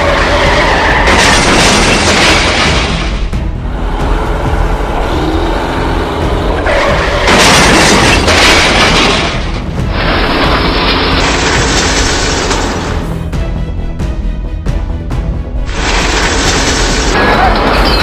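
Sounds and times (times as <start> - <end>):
loud noisy crash: 0.0 - 3.3, 6.6 - 13.0
music: 0.0 - 18.0.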